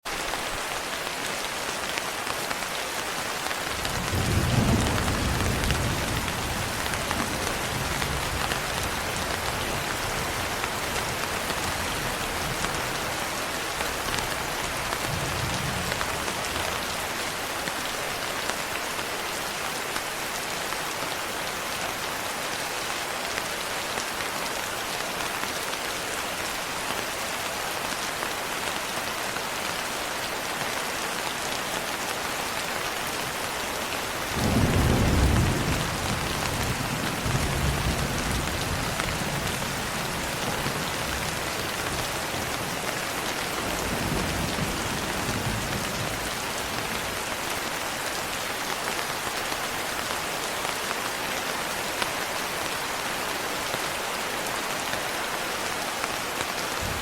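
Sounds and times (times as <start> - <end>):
steady rain falling: 0.0 - 57.0
thunder rumbling: 34.3 - 41.1, 56.8 - 57.0.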